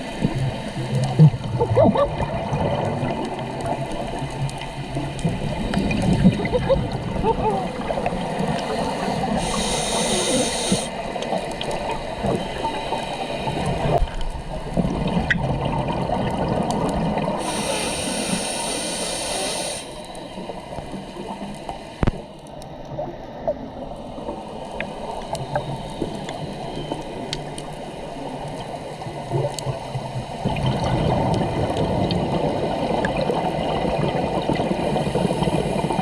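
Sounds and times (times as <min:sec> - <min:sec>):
bubbly gurgling exhaust: 0:00.0 - 0:10.9, 0:13.5 - 0:18.3, 0:29.1 - 0:36.0
regulator hissing inhales: 0:08.7 - 0:11.0, 0:17.4 - 0:20.3.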